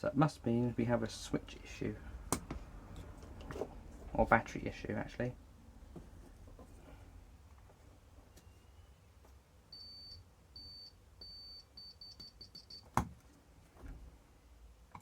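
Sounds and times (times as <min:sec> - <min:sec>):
multimeter beeping: 0:09.7 - 0:12.9.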